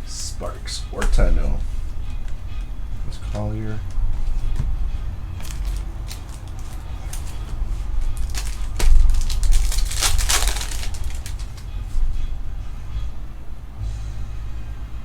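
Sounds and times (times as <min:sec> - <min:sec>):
steady low hum: 0:00.0 - 0:15.0
card wrappers crinkling: 0:05.4 - 0:11.8.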